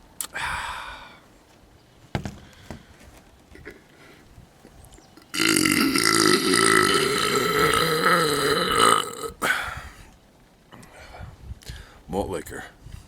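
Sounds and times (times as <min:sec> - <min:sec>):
man belching: 0:05.2 - 0:09.6.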